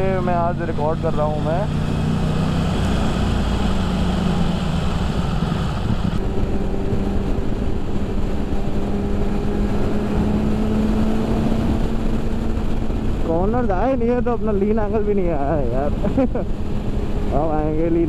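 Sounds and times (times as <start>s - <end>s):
motorcycle engine running: 0.0s - 18.0s
wind noise on microphone: 1.7s - 14.5s.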